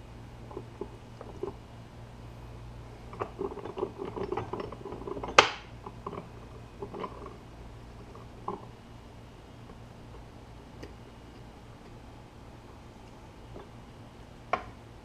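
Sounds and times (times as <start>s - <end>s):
steady low hum: 0.0s - 15.0s
objects clicking and rattling: 3.1s - 7.4s.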